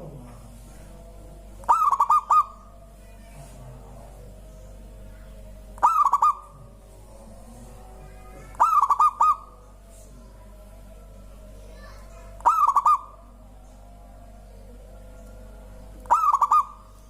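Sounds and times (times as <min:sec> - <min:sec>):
dove cooing: 0:00.0 - 0:04.4, 0:05.0 - 0:10.5, 0:11.8 - 0:13.4, 0:16.0 - 0:17.0.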